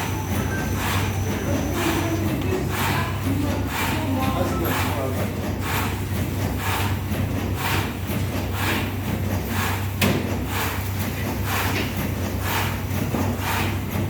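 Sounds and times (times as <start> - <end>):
electrical hum: 0.0 - 5.8.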